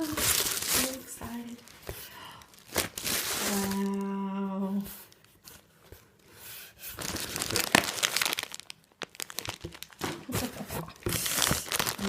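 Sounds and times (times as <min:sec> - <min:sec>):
packaging crinkling and rustling: 0:00.0 - 0:04.2, 0:06.9 - 0:12.0.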